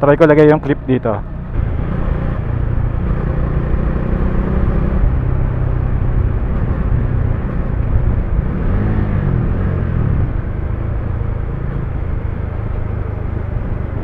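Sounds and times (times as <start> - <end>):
motorcycle engine running: 0.0 - 14.0
wind and road noise: 0.0 - 14.0.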